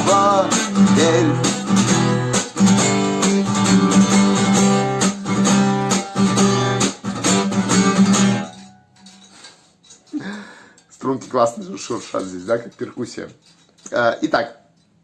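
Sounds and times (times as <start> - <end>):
acoustic guitar strumming: 0.0 - 10.6.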